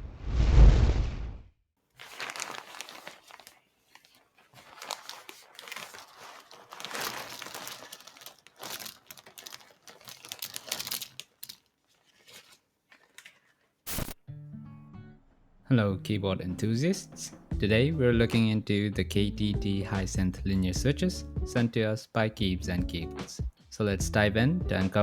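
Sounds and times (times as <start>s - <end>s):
crinkling and rustling: 1.8s - 13.8s.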